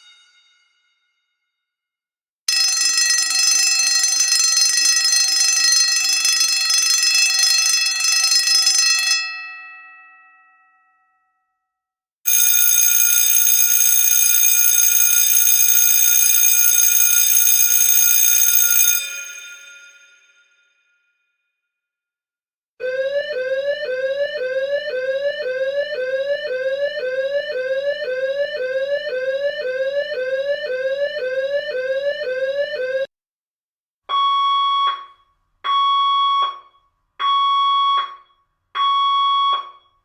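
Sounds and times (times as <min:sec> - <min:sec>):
electric fire alarm bells ringing: 0:02.5 - 0:09.5, 0:12.3 - 0:20.2.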